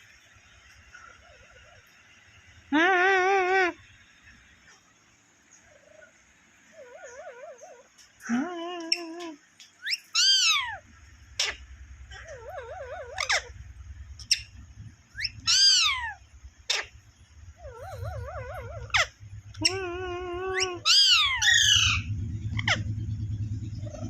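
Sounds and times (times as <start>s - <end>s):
parrot squawks: 9.8s - 13.6s, 15.1s - 17.0s, 17.6s - 22.9s
parrot whistling: 15.1s - 16.9s, 17.6s - 22.8s.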